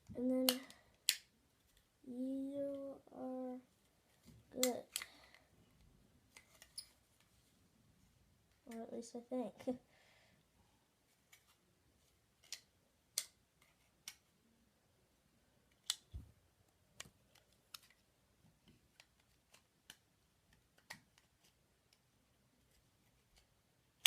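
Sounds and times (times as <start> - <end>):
plastic toy parts clicking: 0.4 - 1.3, 4.6 - 5.2, 12.4 - 13.4.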